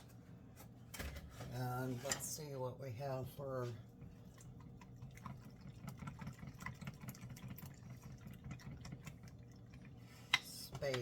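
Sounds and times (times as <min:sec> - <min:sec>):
liquid pouring into a pan: 0:04.2 - 0:10.3.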